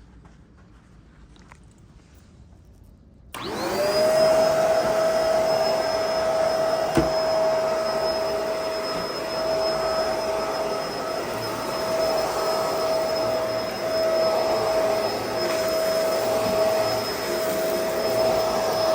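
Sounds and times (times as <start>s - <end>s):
vacuum cleaner motor whine: 3.3s - 18.9s.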